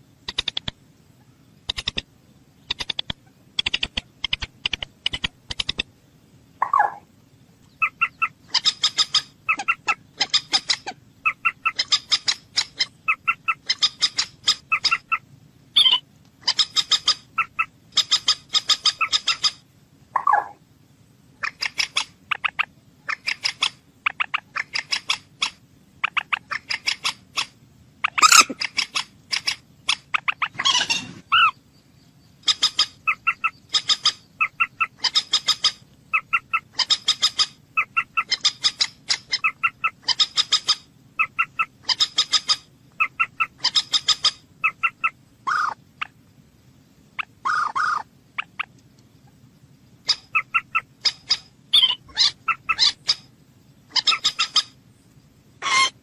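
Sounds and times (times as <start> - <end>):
moorhen clicking calls: 0.2 - 0.8, 1.6 - 5.9, 6.6 - 7.0, 7.7 - 15.2, 15.8 - 19.6, 20.2 - 20.6, 21.4 - 31.6, 32.4 - 46.2, 47.2 - 49.4, 50.0 - 53.3, 53.9 - 54.8
moorhen longer lower calls: 30.2 - 46.1, 47.2 - 49.4, 50.0 - 53.3, 55.6 - 56.0.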